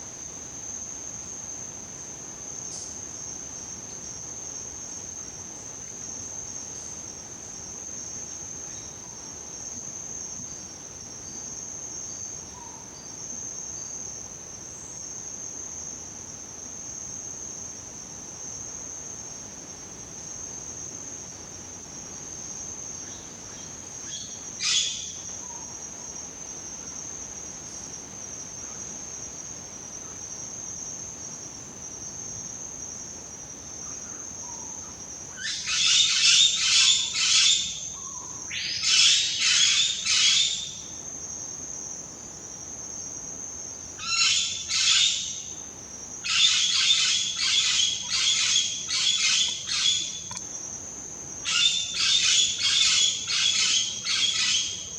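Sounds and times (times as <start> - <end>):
high-pitched insect drone: 46.2 - 50.4, 51.4 - 54.9.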